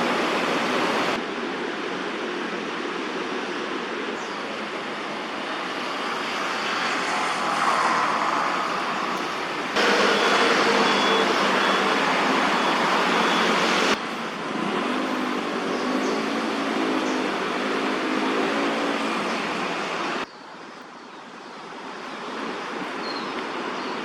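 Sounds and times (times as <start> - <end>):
city traffic noise: 0.0 - 24.0.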